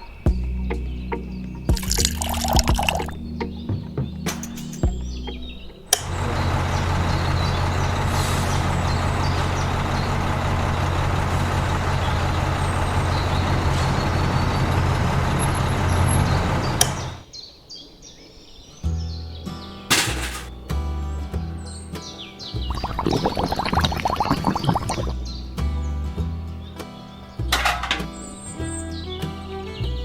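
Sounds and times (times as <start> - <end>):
heavy vehicle engine running: 3.4 - 17.2
sharp click: 4.3 - 5.0.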